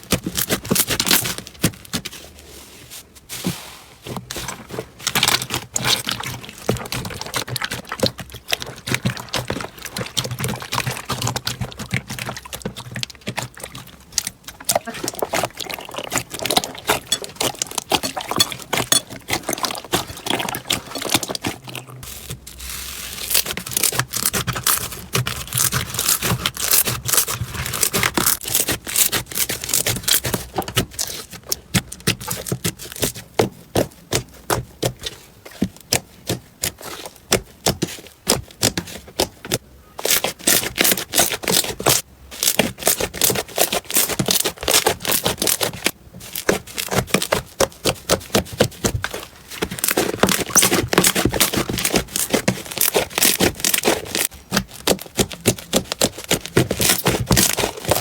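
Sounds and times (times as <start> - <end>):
slime squished by hand: 3.3 - 35.2.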